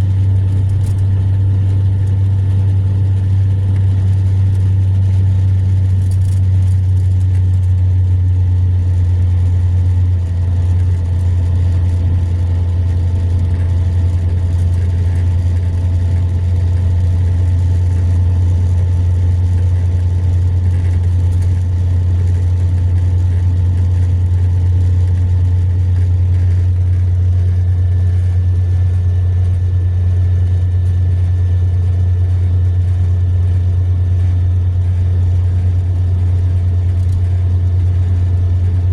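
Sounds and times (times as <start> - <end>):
coach diesel engine drone: 0.0 - 38.9.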